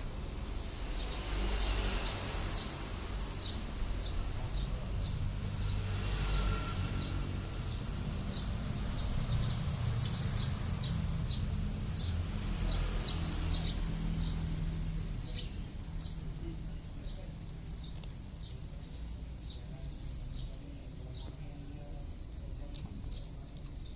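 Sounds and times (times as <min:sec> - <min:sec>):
steady low rumble: 0:00.0 - 0:23.9.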